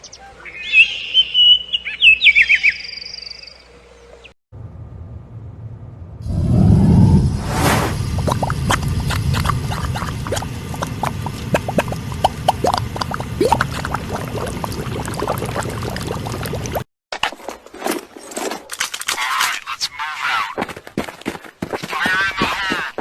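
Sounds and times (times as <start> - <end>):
sharp separate sounds: 6.3 - 10.4
crackling clicks and chirps: 8.1 - 14.0.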